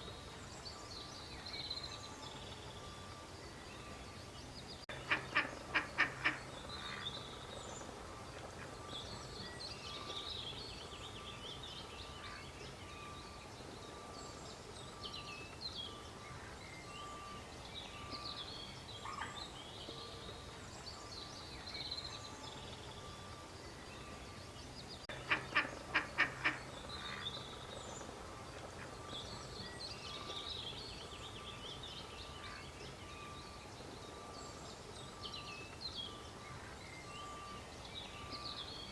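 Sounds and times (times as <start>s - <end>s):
small birds chirping: 0.0s - 8.0s, 8.6s - 28.2s
duck quacking: 5.0s - 6.4s, 25.2s - 27.2s.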